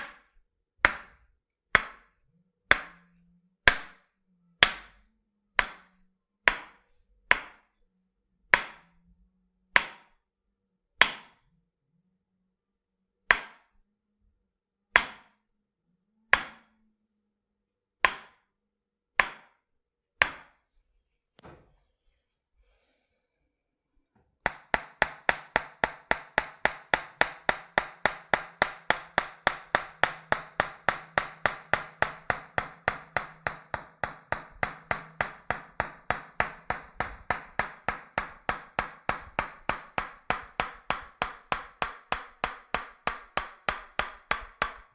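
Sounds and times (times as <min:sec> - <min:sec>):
wooden hammer tapping body: 0:24.4 - 0:44.9.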